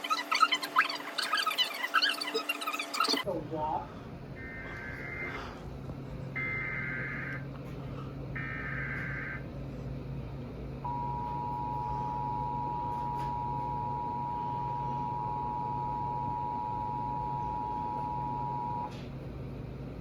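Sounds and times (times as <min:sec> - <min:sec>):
screechy data tones: 0:00.0 - 0:03.3, 0:04.4 - 0:05.4, 0:06.4 - 0:07.4, 0:08.4 - 0:09.4
steady low hum: 0:02.4 - 0:20.0
two-tone attention signal: 0:10.9 - 0:18.9.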